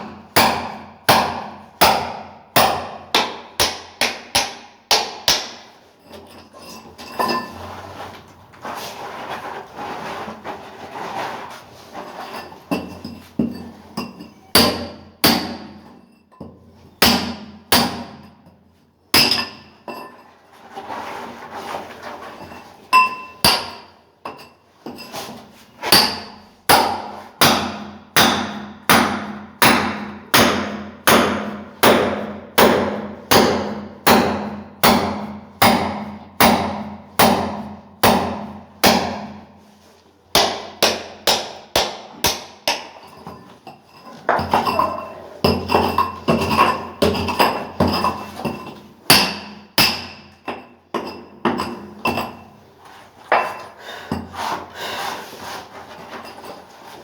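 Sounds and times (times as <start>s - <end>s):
hammer striking chisel: 0.0s - 5.8s, 12.7s - 18.4s, 19.1s - 20.1s, 23.0s - 24.5s, 25.9s - 39.5s, 40.3s - 52.4s
concrete scraping: 6.0s - 14.4s, 20.0s - 22.9s, 52.8s - 57.0s.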